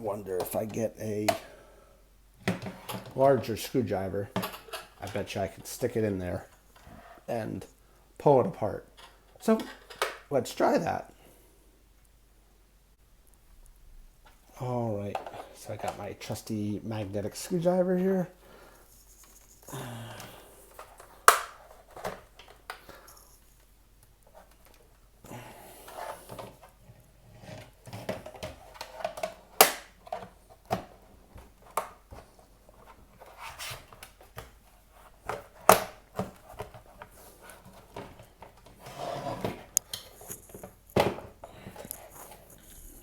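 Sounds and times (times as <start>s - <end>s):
plastic clicks and snaps: 21.0s - 21.6s.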